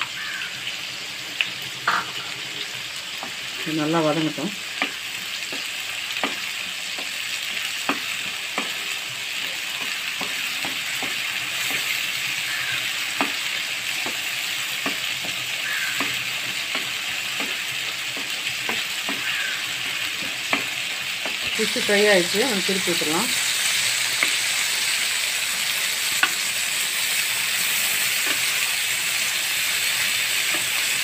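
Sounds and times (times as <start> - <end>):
food sizzling in hot oil: 0.0 - 31.0
spatula clicking against pan: 4.7 - 8.9, 9.7 - 21.5.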